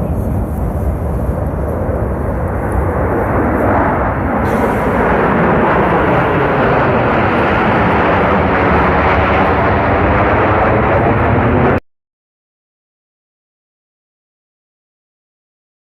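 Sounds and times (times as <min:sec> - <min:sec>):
aircraft engine roar overhead: 0:00.0 - 0:11.8.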